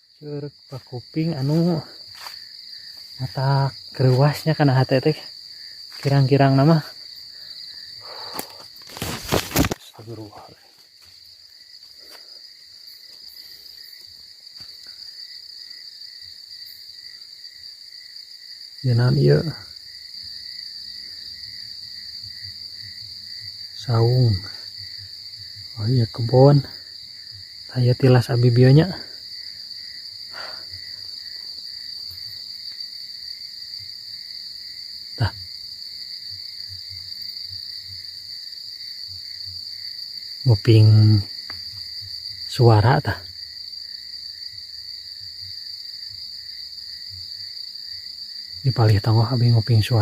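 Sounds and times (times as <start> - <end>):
crickets chirring: 0.0 - 50.0
insects trilling: 0.0 - 50.0
faint rustle: 8.0 - 12.4.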